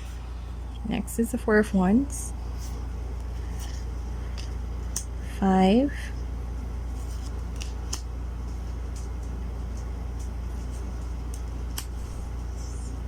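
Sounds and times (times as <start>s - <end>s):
steady low hum: 0.0s - 13.0s
cards clicking when flipped: 7.2s - 8.1s, 11.2s - 12.2s.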